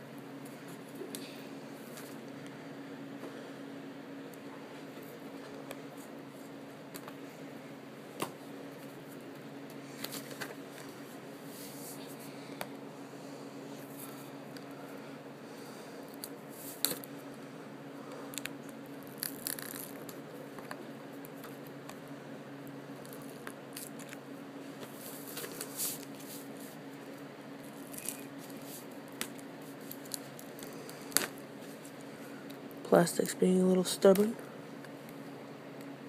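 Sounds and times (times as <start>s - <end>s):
low electrical hum: 0.0s - 36.0s
plastic shrink-wrap crinkling and clicking: 18.4s - 21.6s.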